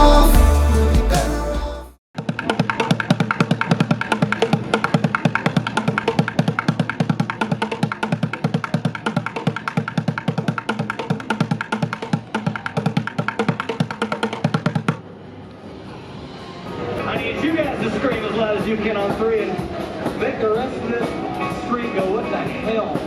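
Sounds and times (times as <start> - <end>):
music with percussive beat: 0.0 - 1.8, 2.4 - 15.0.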